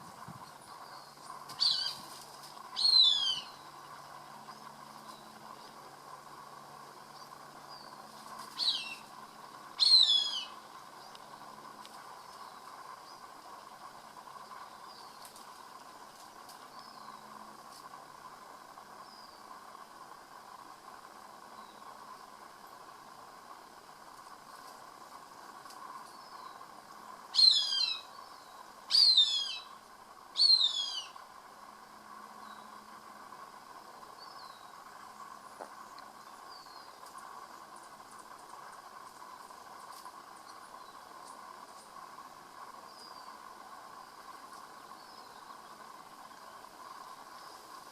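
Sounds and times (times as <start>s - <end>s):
hawk squealing calls: 1.6s - 2.0s, 2.8s - 3.6s, 8.6s - 9.1s, 9.8s - 10.6s, 27.3s - 28.1s, 28.9s - 29.7s, 30.4s - 31.2s.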